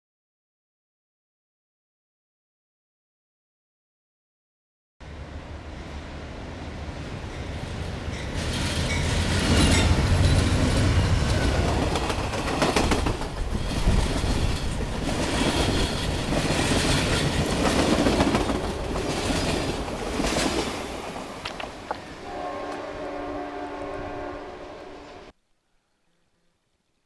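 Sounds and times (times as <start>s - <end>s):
train rumble: 5.1s - 25.3s
train wheels clacking on rails: 8.1s - 22.0s.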